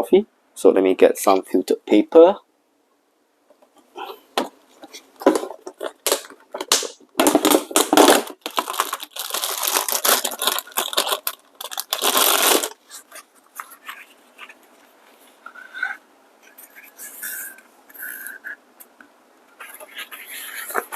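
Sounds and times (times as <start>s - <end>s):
paper filter crinkling: 4.8s - 15.9s.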